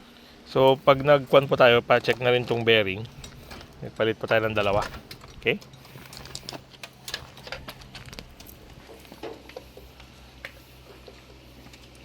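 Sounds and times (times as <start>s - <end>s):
steady low hum: 0.0s - 12.0s
tools and metal parts clicking: 0.6s - 9.9s.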